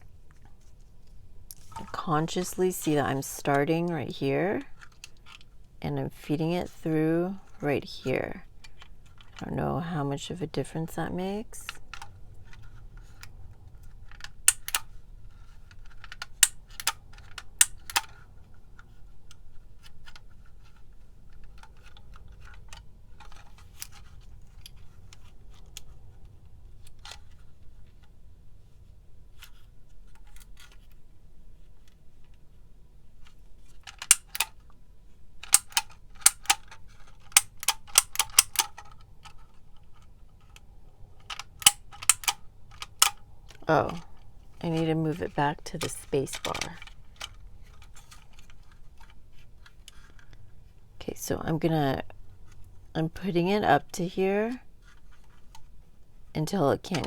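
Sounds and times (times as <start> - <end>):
label maker clicking: 37.4 - 38.7.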